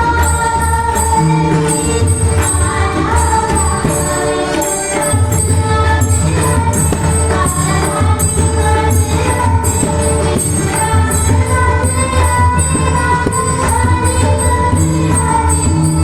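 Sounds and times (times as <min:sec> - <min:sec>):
jingling metal percussion: 0:00.0 - 0:16.0
pakhawaj and tabla drumming: 0:00.0 - 0:16.0
sustained singing: 0:00.0 - 0:16.0.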